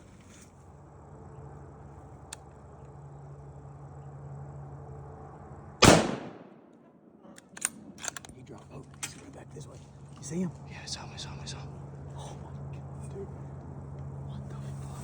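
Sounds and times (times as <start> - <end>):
faint low hum: 0.0 - 15.0
loud gunshot with echo: 5.8 - 6.6.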